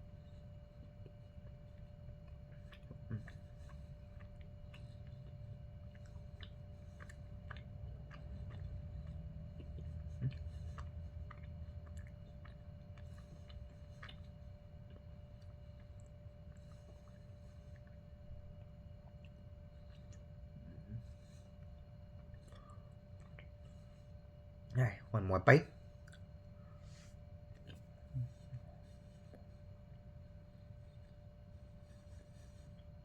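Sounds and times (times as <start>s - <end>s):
faint steady hum: 0.0s - 33.0s
person chewing: 1.0s - 23.7s
wet mouth clicks and smacks: 26.0s - 26.3s.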